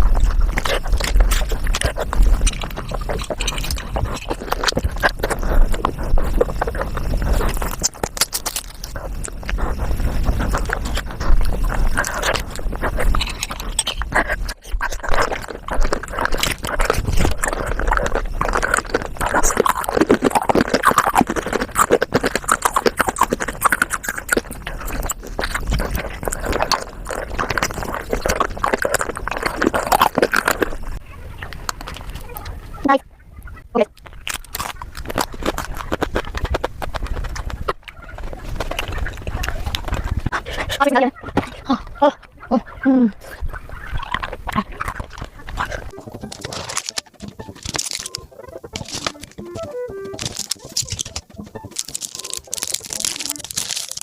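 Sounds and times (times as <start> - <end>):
sped-up crunching and chewing: 0.0 - 54.0
sped-up chattering voice: 45.3 - 54.0.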